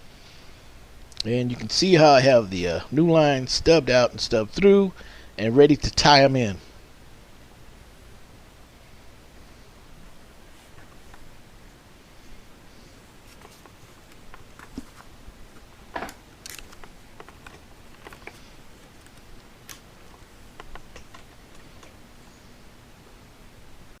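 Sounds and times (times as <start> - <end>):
faint handling clicks and knocks: 13.2 - 22.0.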